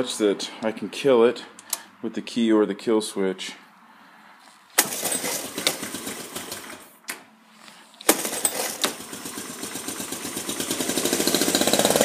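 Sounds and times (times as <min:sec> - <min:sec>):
engine starting and running: 0:04.7 - 0:12.0.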